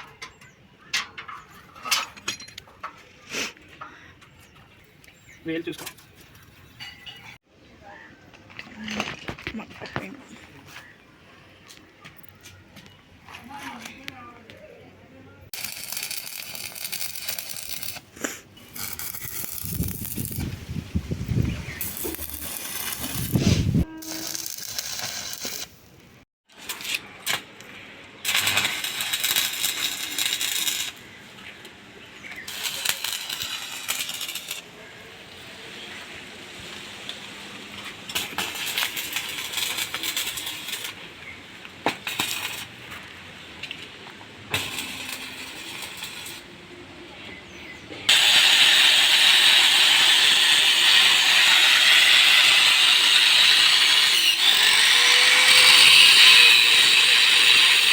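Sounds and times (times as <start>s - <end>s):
metal clinks and scraping: 0.0s - 3.1s, 5.8s - 7.4s, 32.4s - 34.7s, 44.5s - 46.4s
power tool running: 48.1s - 57.9s.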